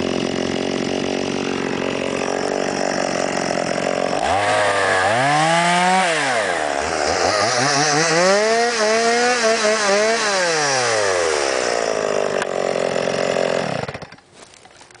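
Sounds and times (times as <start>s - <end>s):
chainsaw revving: 0.0s - 14.3s.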